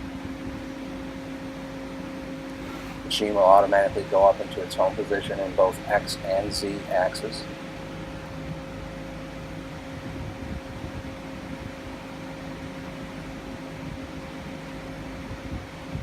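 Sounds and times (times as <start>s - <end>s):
lathe humming: 2.3s - 9.2s.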